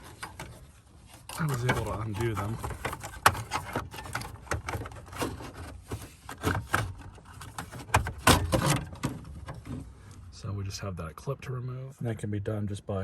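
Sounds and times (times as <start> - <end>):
plastic clicks and knocks: 1.3 - 9.9.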